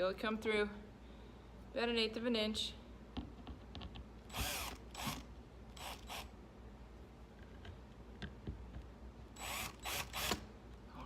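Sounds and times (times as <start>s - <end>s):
drill driving screw into wood: 4.3s - 6.3s, 9.4s - 10.5s.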